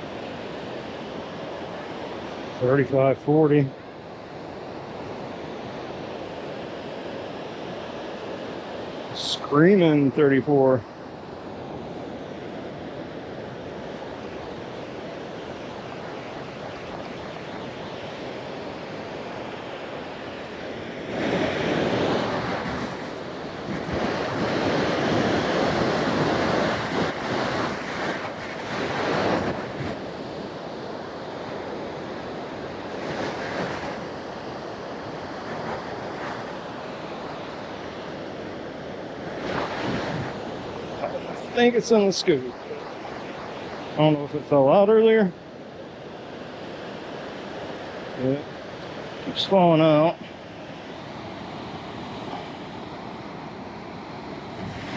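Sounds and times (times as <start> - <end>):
surf: 0.0 - 54.9
wind buffeting microphone: 21.1 - 30.6, 39.2 - 44.2, 54.3 - 54.9.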